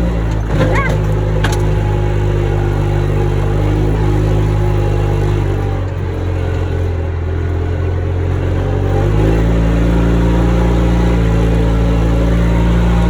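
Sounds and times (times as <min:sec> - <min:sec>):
farm vehicle engine running: 0:00.0 - 0:13.0.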